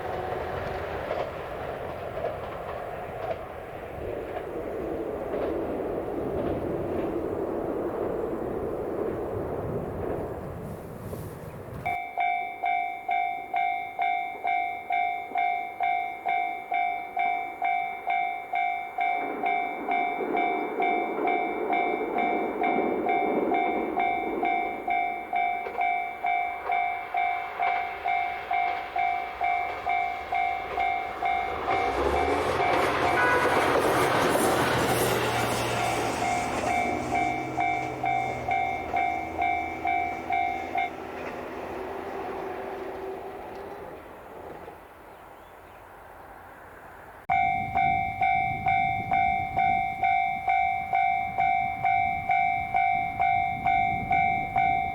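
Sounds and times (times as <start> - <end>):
train running: 0.0 - 44.9, 47.3 - 54.9
level crossing bell ringing: 11.9 - 33.4, 36.4 - 41.1, 47.3 - 54.9.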